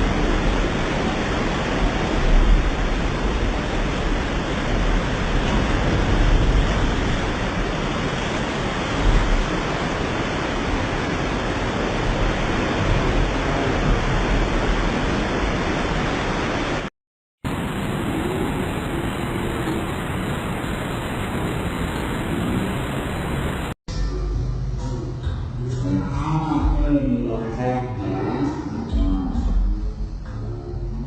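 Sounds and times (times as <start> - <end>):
torrential rain rushing: 0.0 - 23.8.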